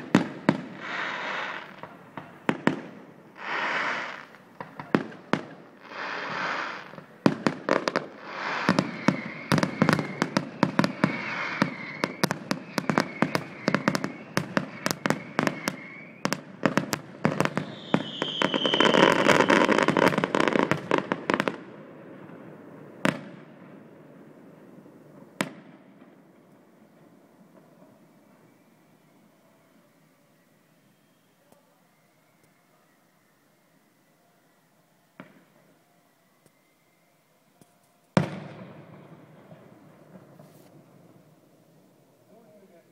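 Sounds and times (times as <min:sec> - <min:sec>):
firework whistles: 0:00.0 - 0:04.8, 0:05.7 - 0:21.6, 0:27.8 - 0:37.4
firework bangs: 0:00.0 - 0:26.2, 0:38.2 - 0:41.3
firework crackling: 0:00.0 - 0:28.4.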